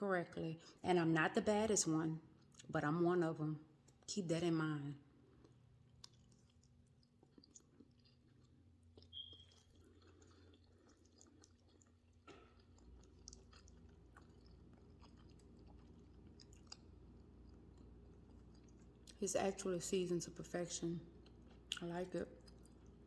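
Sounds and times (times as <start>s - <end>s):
person chewing noodles: 5.1s - 19.2s, 21.1s - 23.0s.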